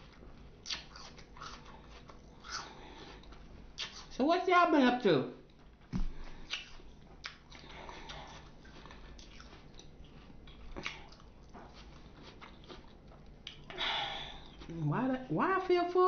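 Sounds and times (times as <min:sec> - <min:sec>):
chewing and biting fruit: 0:00.0 - 0:04.2, 0:05.5 - 0:14.9
sharp mouth clicks: 0:00.6 - 0:01.6, 0:03.8 - 0:04.1, 0:06.5 - 0:07.6.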